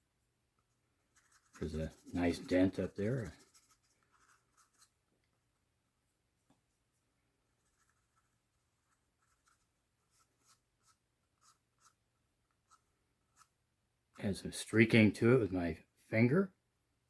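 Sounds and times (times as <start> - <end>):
paintbrush scratching on cardboard: 1.0 - 5.0, 7.5 - 12.0, 12.6 - 13.6.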